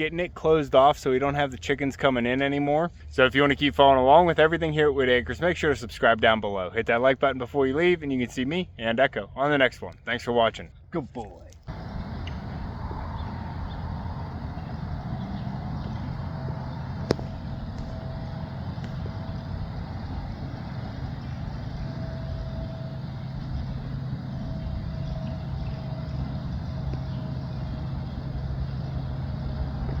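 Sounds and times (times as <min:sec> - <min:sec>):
faint whine: 0:11.7 - 0:30.0
low engine-like hum: 0:11.7 - 0:30.0.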